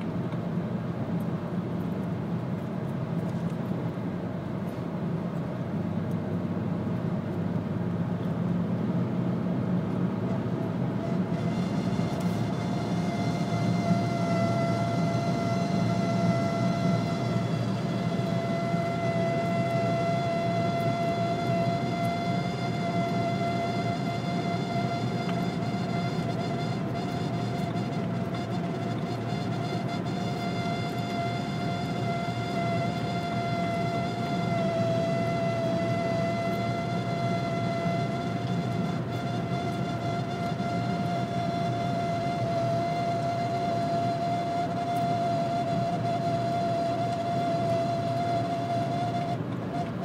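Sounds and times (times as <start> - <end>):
road and wind noise in car: 0.0 - 50.0
high-pitched dashboard squeak: 11.0 - 50.0.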